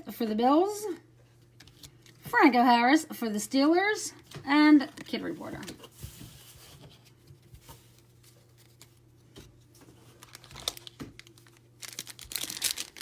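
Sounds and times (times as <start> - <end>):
foil wrapper crinkling: 9.8 - 13.0.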